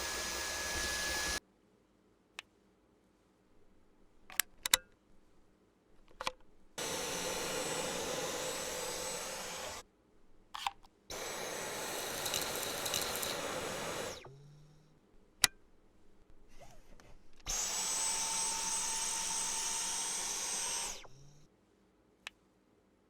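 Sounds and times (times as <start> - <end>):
stick vacuum motor whining: 0.0 - 1.4, 6.2 - 9.8, 11.1 - 14.9, 16.3 - 21.4.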